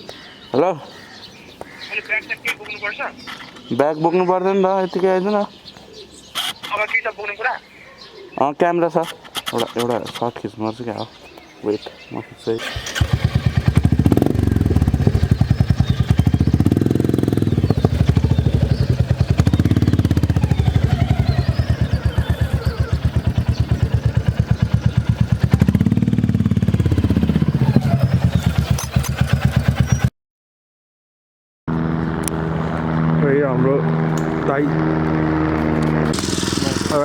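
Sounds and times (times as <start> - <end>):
motorcycle engine revving: 12.6 - 30.1, 31.7 - 37.0
engine running steadily: 12.7 - 29.9, 31.7 - 37.0.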